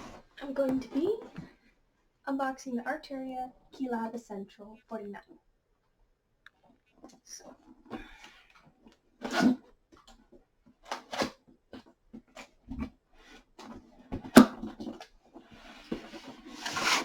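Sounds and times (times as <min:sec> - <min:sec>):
scraping rustle: 0:14.8 - 0:17.0.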